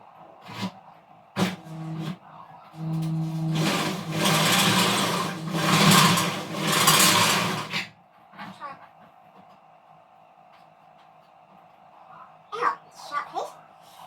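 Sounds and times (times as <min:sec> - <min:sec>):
electric drill boring into steel: 0:02.8 - 0:07.8.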